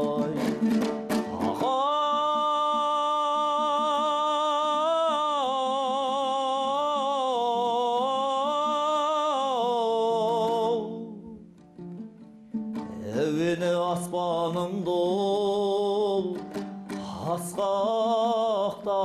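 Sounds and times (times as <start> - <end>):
instrumental accompaniment: 0.0 - 2.3, 10.4 - 15.0, 16.0 - 18.4.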